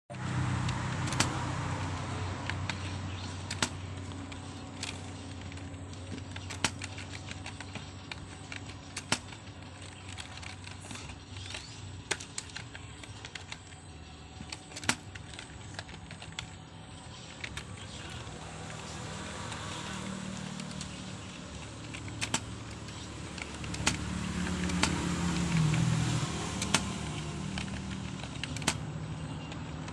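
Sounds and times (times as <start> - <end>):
computer keyboard typing: 0.2 - 29.9.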